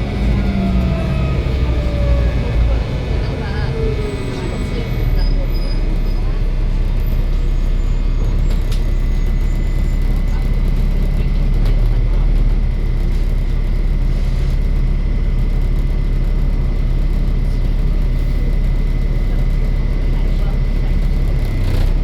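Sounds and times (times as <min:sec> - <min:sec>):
diesel bus engine rumbling: 0:00.0 - 0:22.0.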